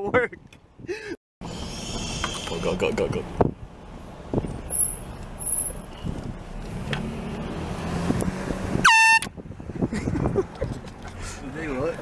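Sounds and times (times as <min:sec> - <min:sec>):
road noise: 0:00.0 - 0:12.0
car engine: 0:01.4 - 0:12.0
air horn blast: 0:08.8 - 0:09.3.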